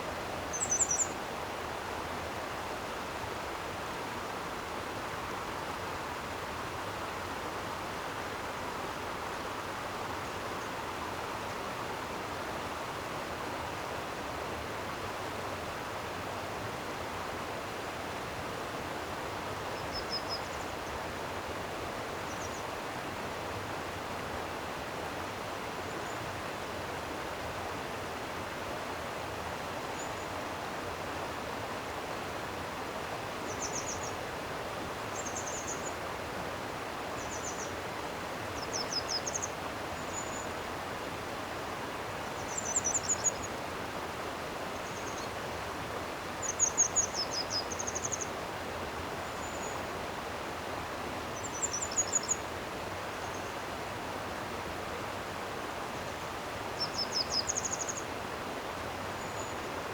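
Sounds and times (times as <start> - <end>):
flowing stream: 0.0 - 59.9
small bird singing: 0.5 - 1.2, 33.5 - 34.2, 35.1 - 36.0, 37.2 - 37.7, 38.6 - 40.5, 42.4 - 43.5, 44.8 - 45.4, 46.4 - 48.3, 51.4 - 52.4, 56.8 - 58.1.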